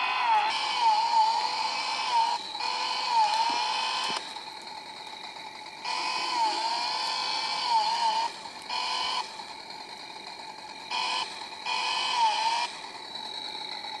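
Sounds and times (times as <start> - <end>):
toy chainsaw whining buzz: 0.0 - 4.3, 5.8 - 9.4, 10.8 - 14.0.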